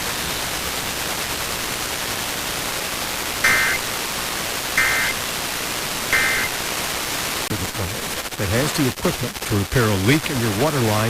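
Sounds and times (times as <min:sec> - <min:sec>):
radio static hiss: 0:00.0 - 0:11.0
digital data tone bursts: 0:03.4 - 0:03.9, 0:04.8 - 0:05.2, 0:06.1 - 0:06.6.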